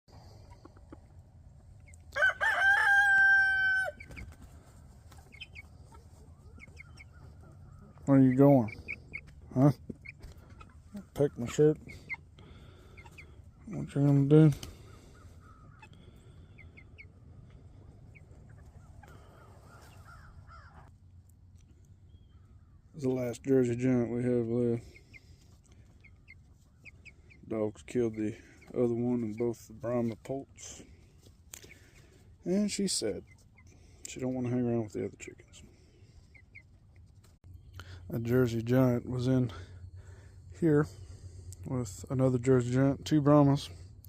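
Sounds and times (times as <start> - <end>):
rooster crowing: 2.1 - 4.0
faint bird calls: 3.9 - 20.9, 21.7 - 23.3, 37.5 - 41.8.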